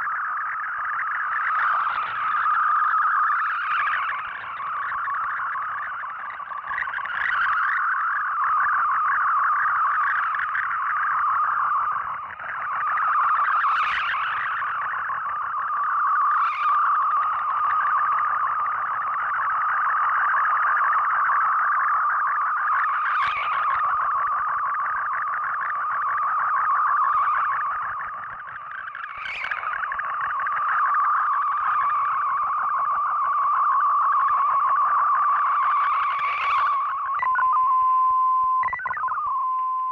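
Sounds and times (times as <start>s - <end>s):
warbling digital data signal: 0.0s - 39.9s
radio crackles: 36.1s - 39.9s.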